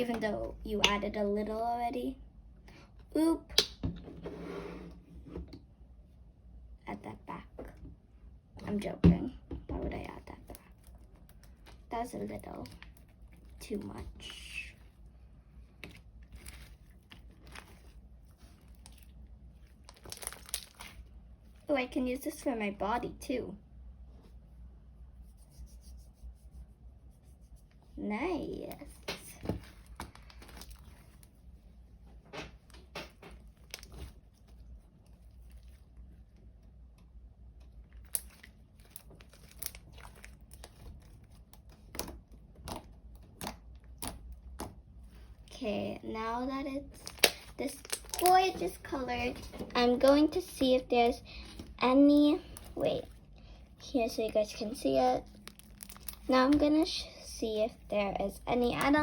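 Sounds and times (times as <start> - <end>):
slime being squished by hand: 15.7 - 21.2, 32.6 - 36.1, 37.7 - 45.5, 46.9 - 53.3, 54.0 - 59.0
sticky clicks and crackling pops: 47.0 - 48.8.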